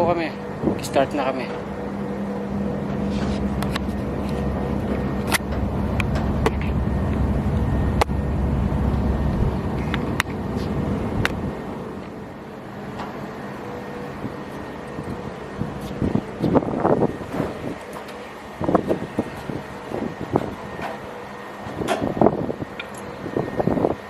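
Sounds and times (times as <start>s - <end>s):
low motor hum: 0.0s - 24.0s
low rumble: 1.6s - 12.8s.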